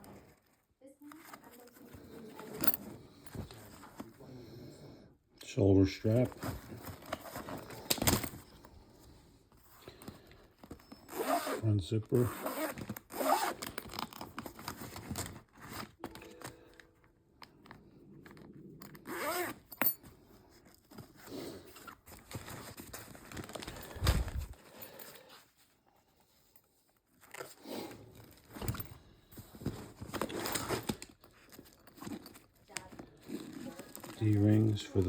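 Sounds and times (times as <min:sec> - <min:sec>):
fabric rustling and scraping: 0:20.2 - 0:28.7.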